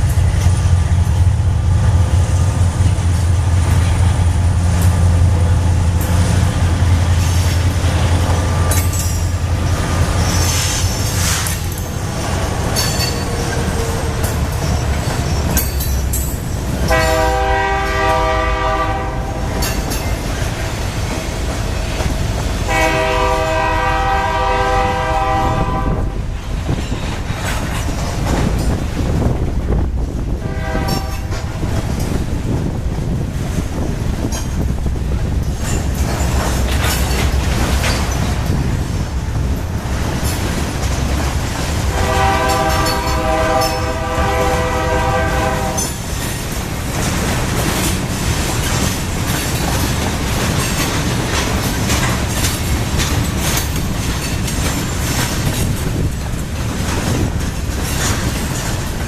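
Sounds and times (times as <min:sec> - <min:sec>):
diesel locomotive engine rumble: 0:00.0 - 0:59.0
wheels clattering on rails: 0:00.0 - 0:59.0
locomotive air horn blasts: 0:16.9 - 0:19.6, 0:22.7 - 0:26.2, 0:30.4 - 0:31.4, 0:41.9 - 0:45.9.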